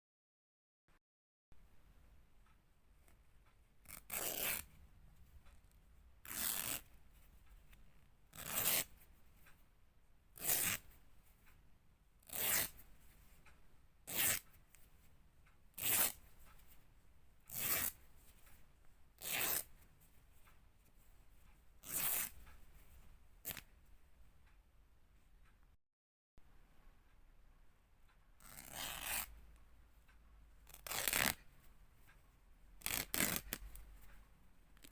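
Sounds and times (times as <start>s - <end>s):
fabric ripping: 6.3s - 6.8s, 28.4s - 29.3s, 30.7s - 31.4s, 32.8s - 33.6s.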